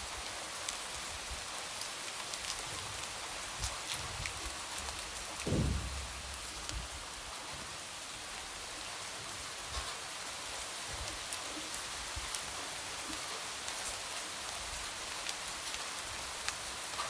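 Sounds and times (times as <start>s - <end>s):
light rain on window: 0.1s - 7.2s, 9.4s - 17.0s
low thump: 5.5s - 7.0s.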